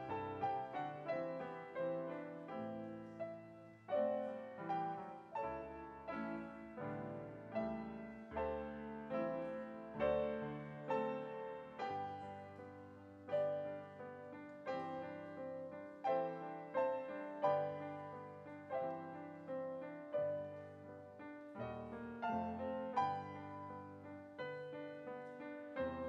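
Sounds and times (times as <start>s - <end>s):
slow gentle piano piece: 0.0s - 26.0s.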